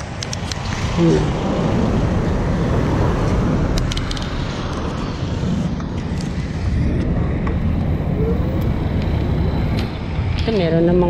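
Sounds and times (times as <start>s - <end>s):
vehicle engine and road noise: 0.0s - 11.0s.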